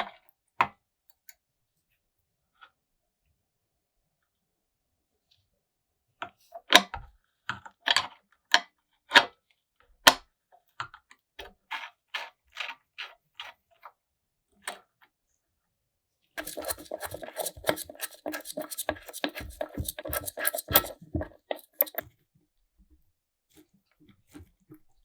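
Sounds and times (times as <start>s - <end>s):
parts clattering and rattling: 16.4s - 22.0s
sharp clicks and knocks: 16.4s - 22.0s.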